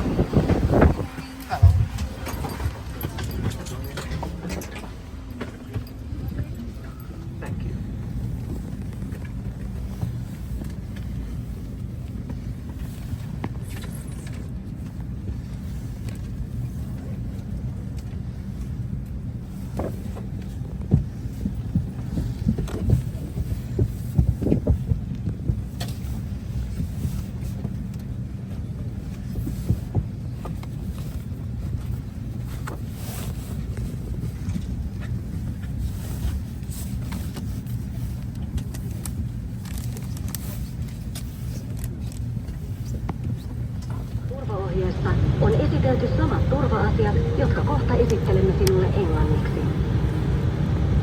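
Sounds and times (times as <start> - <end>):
aircraft cabin ventilation hum: 0.0 - 51.0.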